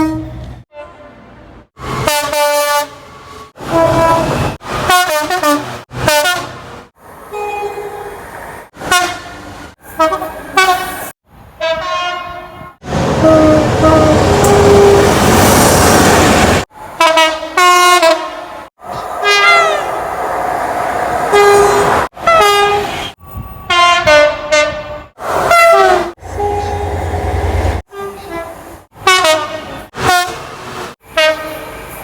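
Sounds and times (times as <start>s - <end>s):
train rumbling past: 12.8s - 32.0s
two-note train horn blasts: 23.7s - 27.1s.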